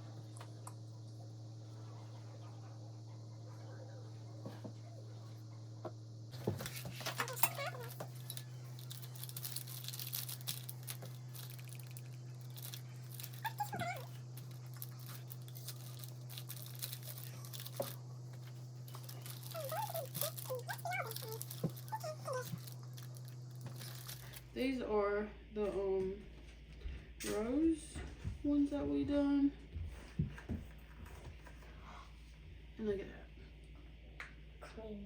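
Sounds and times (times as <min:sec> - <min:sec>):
rustling and crinkling: 0:06.3 - 0:24.5
dog whimpering: 0:13.4 - 0:14.2, 0:19.2 - 0:22.7.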